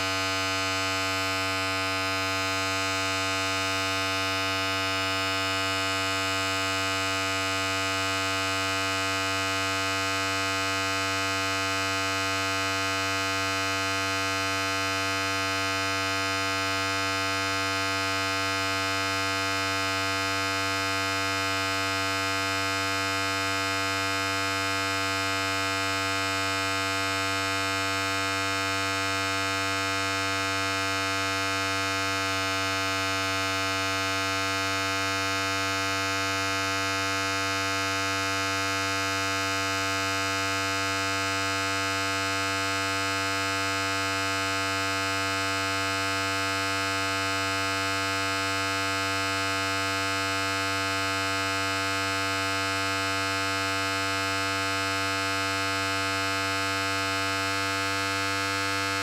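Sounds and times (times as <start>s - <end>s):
electric hair clipper buzzing: 57.5s - 59.0s.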